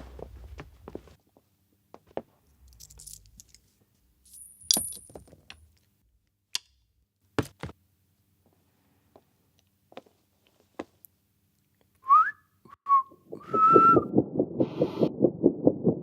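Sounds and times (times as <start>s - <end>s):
small metal objects clinking: 2.5s - 5.8s.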